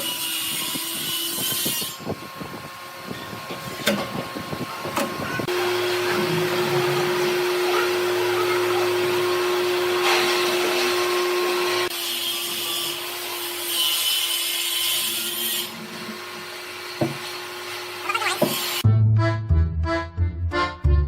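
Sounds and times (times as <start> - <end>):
power tool working wood: 0.0 - 18.8.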